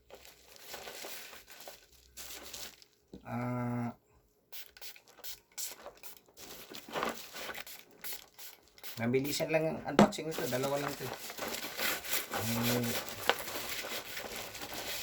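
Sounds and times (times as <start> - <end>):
plastic packaging tearing and crinkling: 0.0 - 3.1, 4.7 - 9.0, 10.2 - 15.0
person humming: 3.3 - 4.0.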